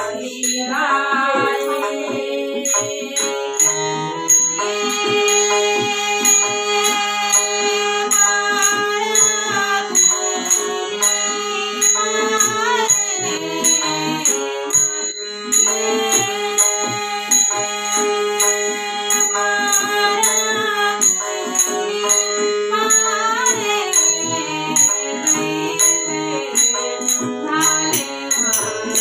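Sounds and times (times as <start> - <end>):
sustained melodic tones: 0.0 - 29.0
high metallic jingling: 9.1 - 29.0.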